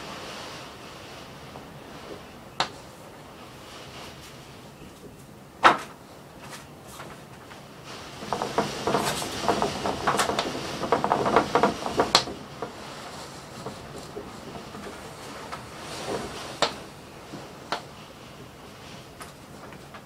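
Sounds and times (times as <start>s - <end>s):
sliding shutters rattling: 7.0s - 17.1s.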